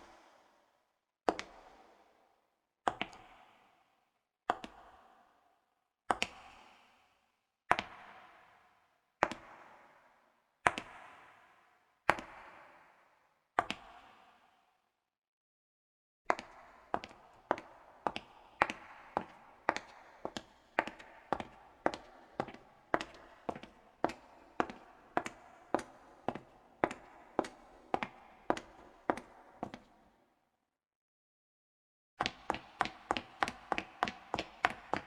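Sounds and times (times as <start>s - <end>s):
high heels clicking on concrete: 16.3s - 30.0s, 32.2s - 35.0s.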